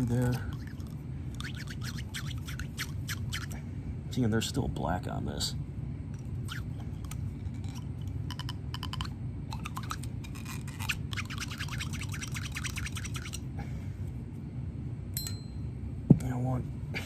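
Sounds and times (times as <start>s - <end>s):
scrubbing strokes on gun barrel: 0.0s - 3.5s
steady low hum: 0.0s - 17.0s.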